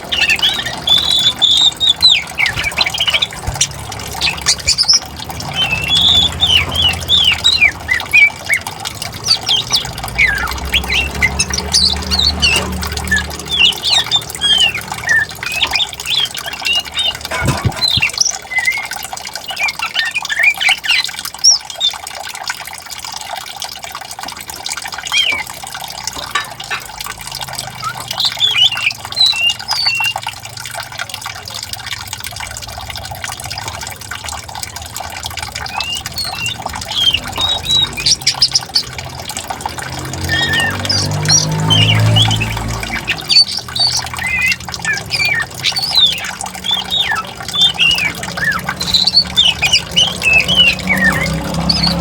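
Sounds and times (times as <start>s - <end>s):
birds chirping and calling: 0.0s - 52.0s
flowing water: 0.0s - 52.0s.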